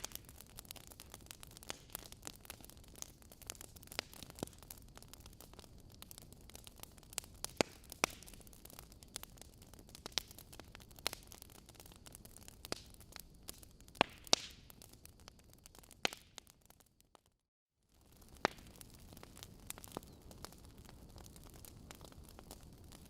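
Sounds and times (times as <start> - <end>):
fire hiss: 0.0 - 15.8
logs crackling and popping: 0.0 - 23.0.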